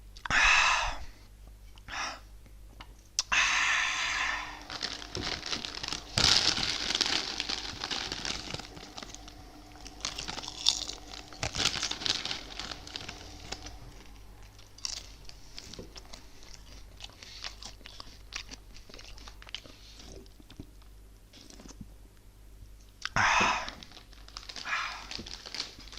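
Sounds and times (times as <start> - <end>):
chips being crunched: 4.6 - 19.6.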